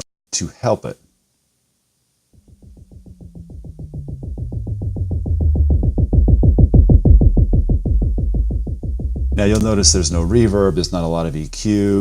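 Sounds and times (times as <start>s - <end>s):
low tone stepping down: 2.3s - 12.0s
fast bass drum hits: 2.4s - 12.0s.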